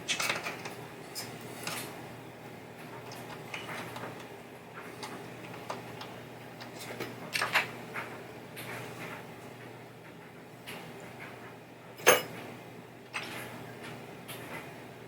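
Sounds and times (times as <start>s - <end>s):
clicks and knocks of parts and tools: 0.1s - 1.9s.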